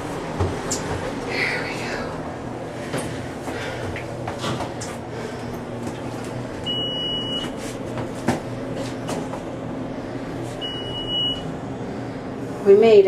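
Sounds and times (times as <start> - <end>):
elevator humming: 0.0 - 13.0
long high beeps: 10.6 - 11.5.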